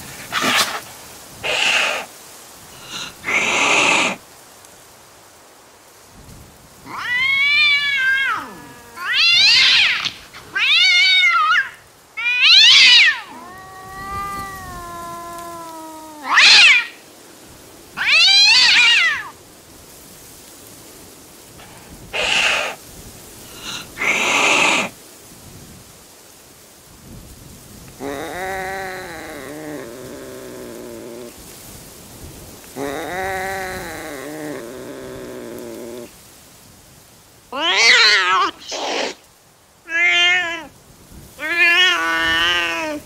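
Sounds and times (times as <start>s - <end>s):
cat hissing: 0.0s - 4.2s, 6.8s - 17.1s, 17.9s - 19.4s, 21.6s - 22.8s, 23.4s - 25.0s, 28.0s - 31.5s, 32.7s - 36.2s, 37.5s - 39.3s, 39.9s - 43.0s
cat yowling: 1.4s - 2.1s, 2.8s - 4.2s, 6.8s - 17.0s, 18.0s - 19.3s, 22.2s - 22.8s, 23.5s - 25.0s, 28.0s - 31.3s, 32.8s - 36.1s, 37.5s - 39.2s, 39.9s - 40.8s, 41.4s - 43.0s.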